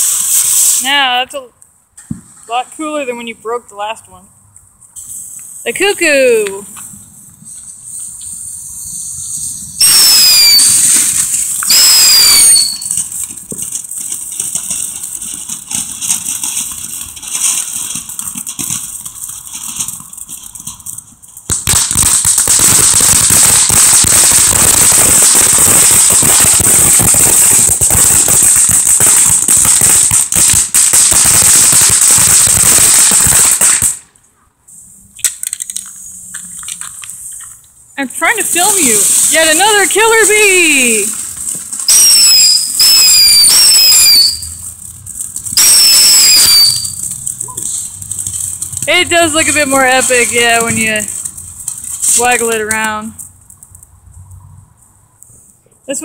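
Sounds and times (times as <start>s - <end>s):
firework hissing and crackling: 0.0s - 3.4s, 4.8s - 56.0s
firework whistles falling in pitch: 7.4s - 13.1s, 41.8s - 44.7s, 45.5s - 47.9s.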